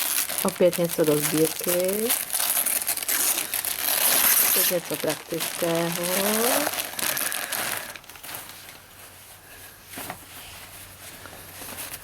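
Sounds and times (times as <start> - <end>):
wrapping paper crinkling: 0.0 - 9.2.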